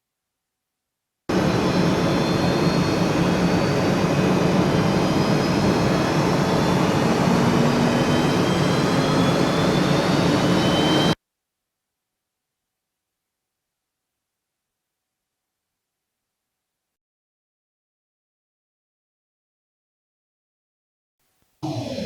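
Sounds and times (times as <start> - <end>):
faint high whistling tones: 1.3 - 11.2
jet-like roar: 1.3 - 11.2.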